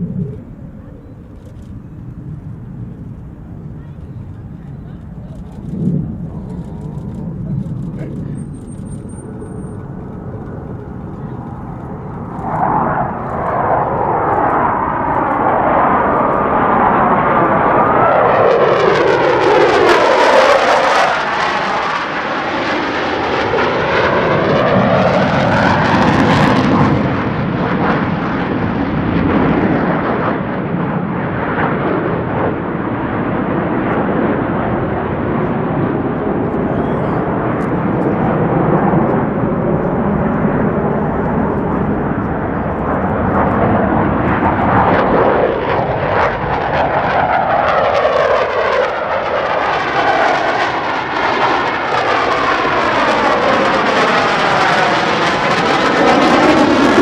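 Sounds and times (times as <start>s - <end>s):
jet engines flying overhead: 0.0s - 57.0s.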